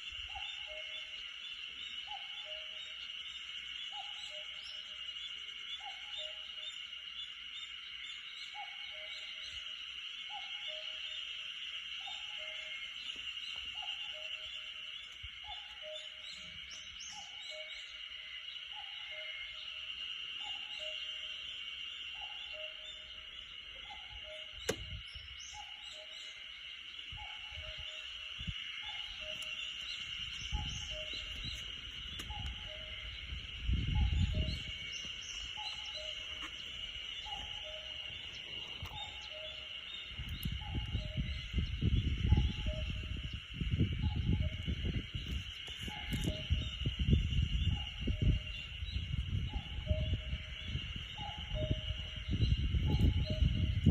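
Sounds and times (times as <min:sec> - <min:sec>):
forest ambience hiss: 0:00.0 - 0:53.9
cuckoo calling: 0:02.0 - 0:03.0, 0:12.0 - 0:18.0, 0:22.1 - 0:26.4, 0:27.1 - 0:53.9
sharp click: 0:24.6 - 0:24.9
small bird chirps: 0:27.1 - 0:53.9.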